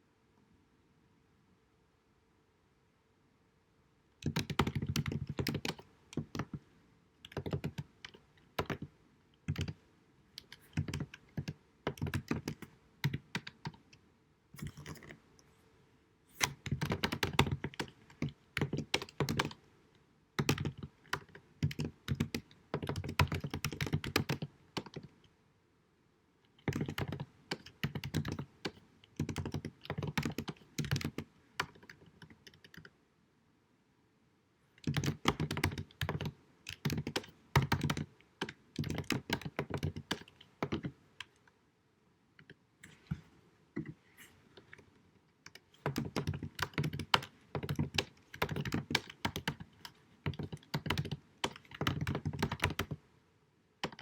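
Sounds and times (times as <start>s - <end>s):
faint steady hum: 0.0s - 54.0s
computer keyboard typing: 4.2s - 6.6s, 7.2s - 9.8s, 10.4s - 14.0s, 14.6s - 15.2s, 16.4s - 19.6s, 20.4s - 25.1s, 26.6s - 33.0s, 34.8s - 41.4s, 45.4s - 53.0s, 53.8s - 54.0s.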